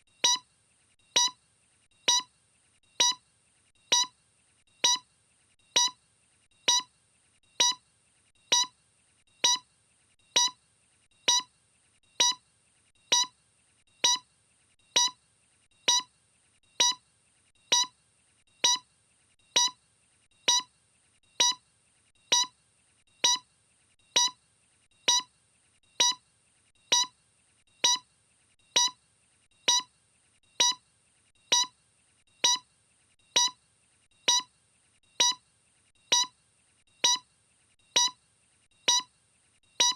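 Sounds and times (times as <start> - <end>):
short electronic beeps: 0.2 - 0.4, 1.2 - 1.4, 2.1 - 2.3, 3.0 - 3.2, 3.9 - 4.1, 4.8 - 5.0, 5.8 - 6.0, 6.7 - 6.9, 7.6 - 7.8, 8.5 - 8.7, 9.4 - 9.6, 10.4 - 10.6, 11.3 - 11.5, 12.2 - 12.4, 13.1 - 13.3, 14.0 - 14.2, 15.0 - 15.2, 15.9 - 16.1, 16.8 - 17.0, 17.7 - 17.9, 18.6 - 18.8, 19.6 - 19.8, 20.5 - 20.7, 21.4 - 21.6, 22.3 - 22.5, 23.2 - 23.4, 24.2 - 24.4, 25.1 - 25.3, 26.0 - 26.2, 26.9 - 27.1, 27.8 - 28.0, 28.8 - 29.0, 29.7 - 29.9, 30.6 - 30.8, 31.5 - 31.7, 32.4 - 32.6, 33.4 - 33.6, 34.3 - 34.5, 35.2 - 35.4, 36.1 - 36.3, 37.0 - 37.2, 38.0 - 38.2, 38.9 - 39.1.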